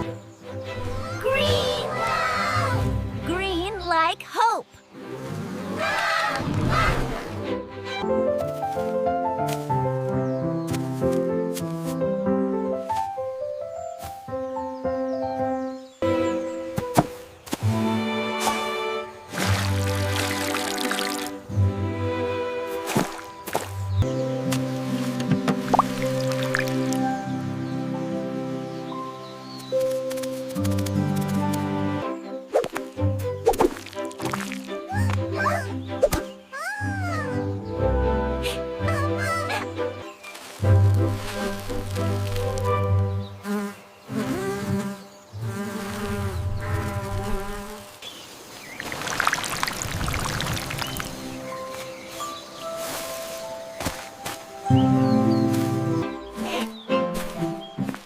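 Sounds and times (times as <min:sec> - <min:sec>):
background music with held chords: 0:17.7 - 0:43.7, 0:51.1 - 0:58.0
crackling rustling noise: 0:40.2 - 0:42.9
buzzing insect-like drone: 0:41.2 - 0:48.1.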